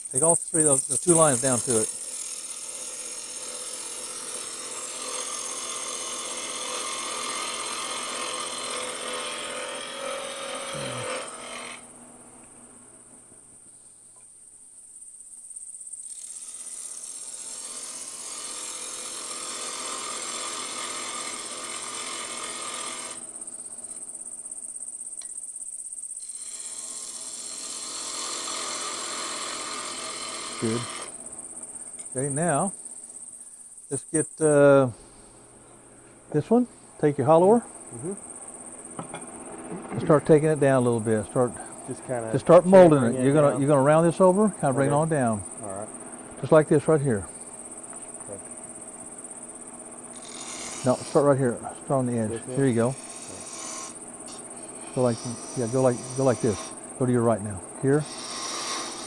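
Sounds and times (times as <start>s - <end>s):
lathe high whine: 0.0s - 11.8s, 26.2s - 31.2s, 50.1s - 59.0s
lathe tool cutting wood: 0.2s - 11.8s, 16.1s - 23.2s, 26.2s - 31.2s, 50.1s - 57.1s, 57.8s - 59.0s.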